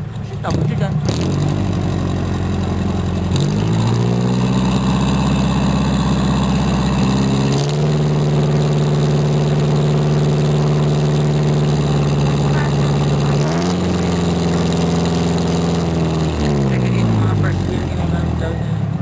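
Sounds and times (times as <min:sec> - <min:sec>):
diesel engine revving: 0:00.0 - 0:19.0.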